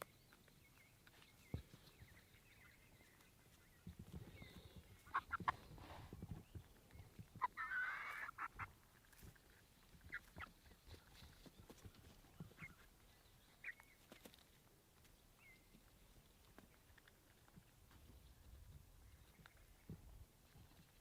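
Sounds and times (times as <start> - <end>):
chicks chirping and clucking: 0.3 - 14.6
chicken squawk: 5.0 - 5.6, 7.4 - 8.8.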